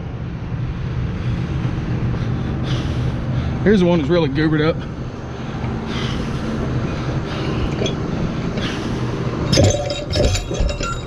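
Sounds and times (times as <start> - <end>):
diesel engine running: 0.0 - 11.0
sharp metallic clank: 9.5 - 11.0.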